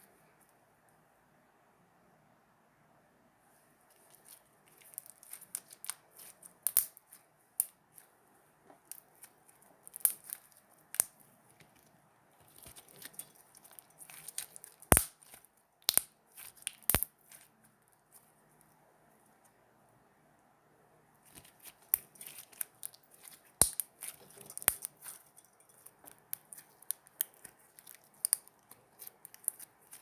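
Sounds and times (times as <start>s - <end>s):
slime clicking and crackling: 4.8s - 7.7s, 8.9s - 11.2s, 12.5s - 17.5s, 21.3s - 30.0s.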